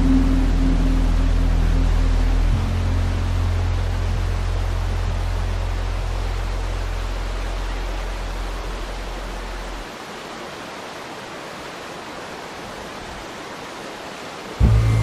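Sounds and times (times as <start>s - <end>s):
low deep hum: 0.0s - 9.0s, 14.6s - 15.0s
waterfall rushing: 0.0s - 15.0s.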